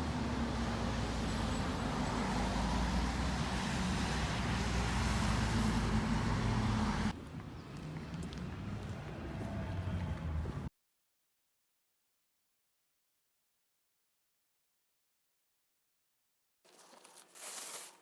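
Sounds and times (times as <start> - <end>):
vehicle engine low rumble: 0.0 - 10.7.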